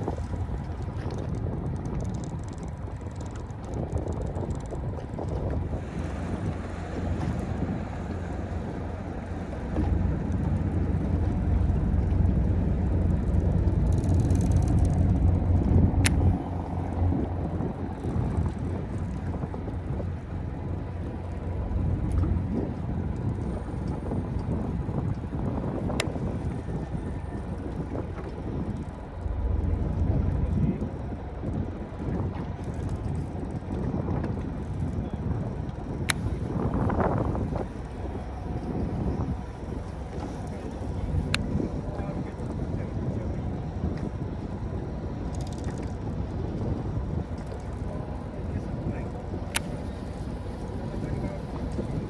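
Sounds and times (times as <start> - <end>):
boat engine rumble: 0.0 - 52.0
wind buffeting microphone: 0.0 - 52.0
sharp click: 49.5 - 49.7.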